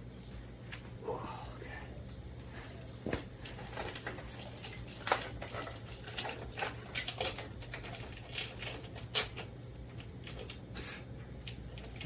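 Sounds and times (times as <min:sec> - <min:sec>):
steady low hum: 0:00.0 - 0:12.0
small parts clicking and clattering: 0:03.4 - 0:12.0.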